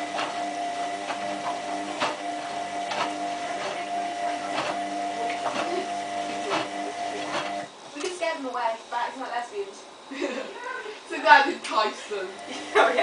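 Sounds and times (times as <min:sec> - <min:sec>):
washing machine drum motor humming: 0:00.0 - 0:07.8, 0:12.1 - 0:13.0.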